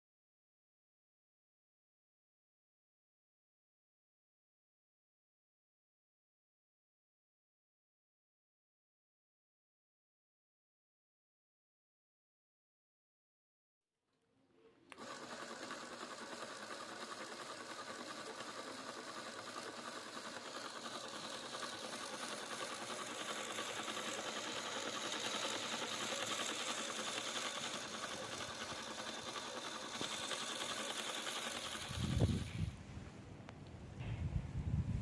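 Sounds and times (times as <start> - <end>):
toy car motor whirring: 14.9 - 32.8.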